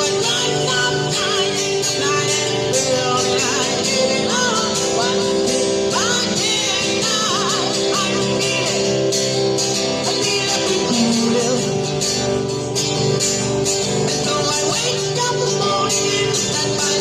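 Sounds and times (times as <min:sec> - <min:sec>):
person singing: 0:00.0 - 0:08.9, 0:10.0 - 0:11.9, 0:14.1 - 0:17.0
guitar: 0:00.0 - 0:17.0.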